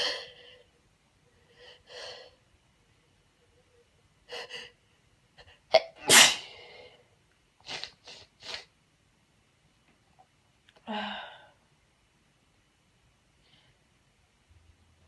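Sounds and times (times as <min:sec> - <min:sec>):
woman sneezing: 0:06.0 - 0:06.5.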